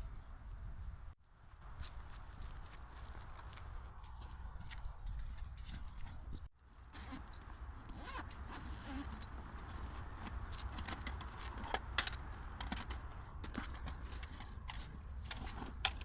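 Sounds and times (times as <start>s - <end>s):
clicks and rustling handling: 7.2s - 16.0s.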